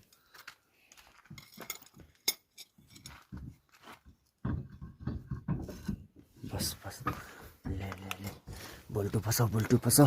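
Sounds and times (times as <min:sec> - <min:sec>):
metal clinks and knocks: 0:00.9 - 0:08.6.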